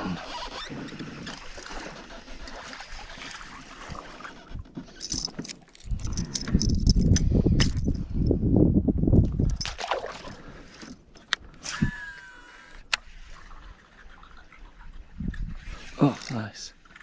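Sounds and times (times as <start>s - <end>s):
light water noise: 0.9s - 7.2s, 9.2s - 17.0s
fishing tackle clicking: 4.9s - 8.1s.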